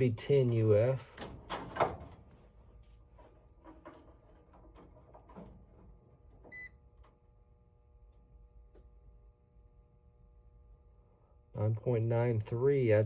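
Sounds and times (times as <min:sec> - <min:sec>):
multimeter beep: 0:06.5 - 0:06.8.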